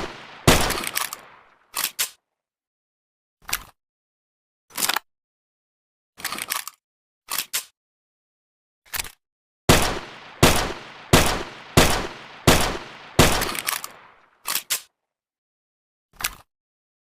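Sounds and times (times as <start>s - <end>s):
gunshot-like bangs: 0.0s - 1.4s, 9.7s - 14.1s
clicks: 12.9s - 14.9s.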